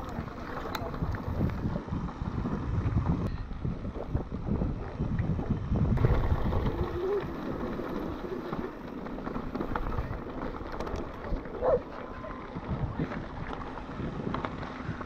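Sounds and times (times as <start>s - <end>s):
wind buffeting microphone: 0.0s - 15.0s
bike clattering over rocks: 6.0s - 15.0s.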